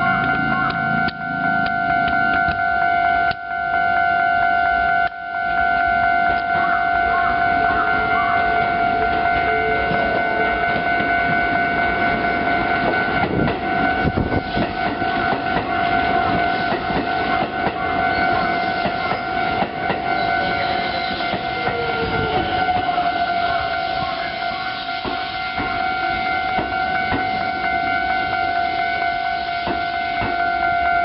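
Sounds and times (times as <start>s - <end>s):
level-crossing alarm ringing: 0.0s - 31.0s
train wheels clacking on rails: 9.9s - 28.4s, 29.4s - 30.6s.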